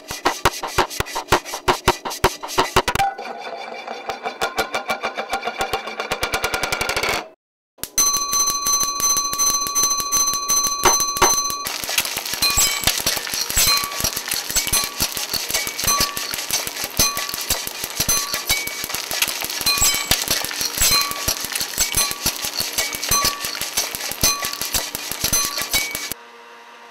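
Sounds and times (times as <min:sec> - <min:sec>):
high ringing tones: 0:08.0 - 0:26.2
rapid dense clicking: 0:10.2 - 0:26.2.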